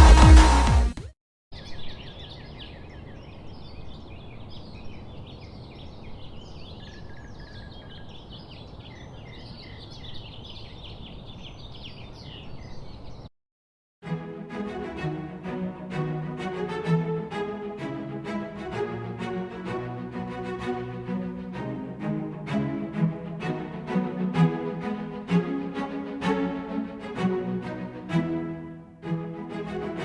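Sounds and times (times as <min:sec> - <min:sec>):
small birds chirping: 0:01.5 - 0:13.3.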